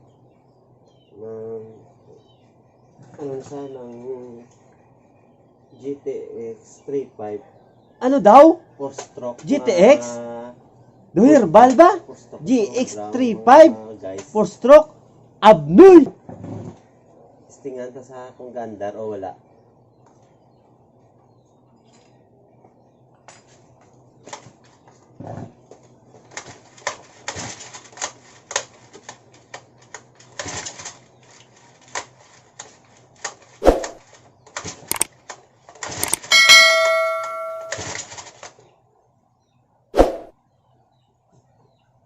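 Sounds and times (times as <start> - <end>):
metallic ringing: 36.0 - 37.8.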